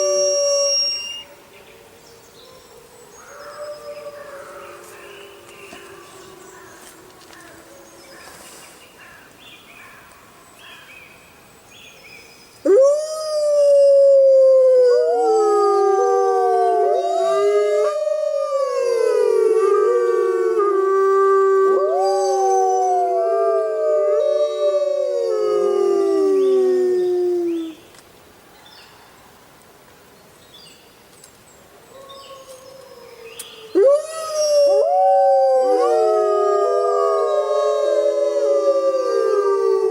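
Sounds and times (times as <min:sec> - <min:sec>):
wolves howling in chorus: 0:12.7 - 0:27.7, 0:32.0 - 0:39.9.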